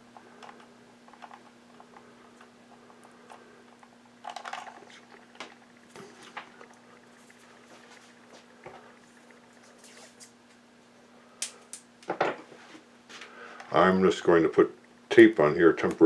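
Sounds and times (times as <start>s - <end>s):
wires clicking and rustling: 0.0s - 10.6s, 11.4s - 12.2s
low steady hum: 0.0s - 16.0s.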